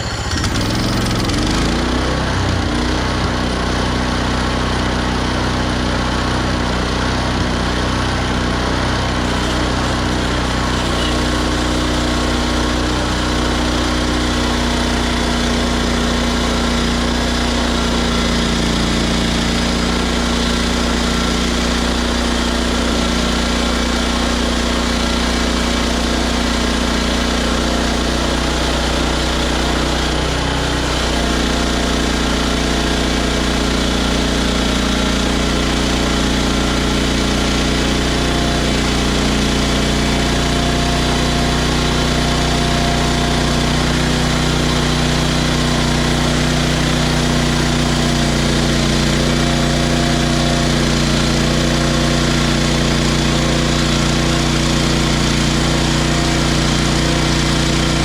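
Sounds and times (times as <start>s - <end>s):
sawmill engine running: 0.0s - 58.0s.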